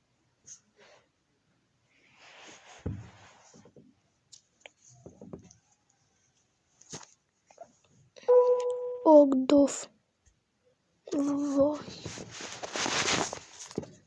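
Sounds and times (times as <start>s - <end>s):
faint rustling and handling: 1.8s - 8.2s, 11.1s - 14.0s
loud steady tone: 8.3s - 9.1s.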